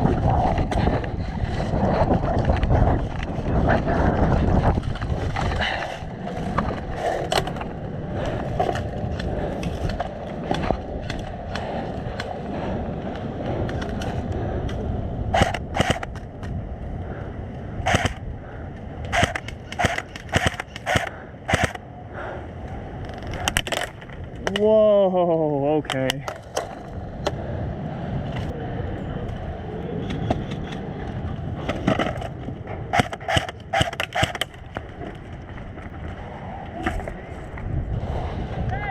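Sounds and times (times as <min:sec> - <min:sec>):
wind buffeting microphone: 0:00.0 - 0:38.9
airsoft guns firing: 0:19.1 - 0:21.8.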